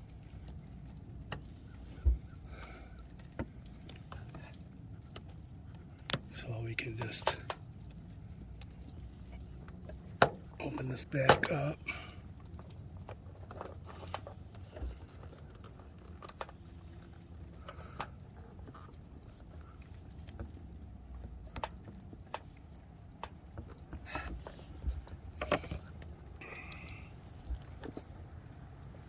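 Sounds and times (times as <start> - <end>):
low steady rumble: 0.0 - 29.0.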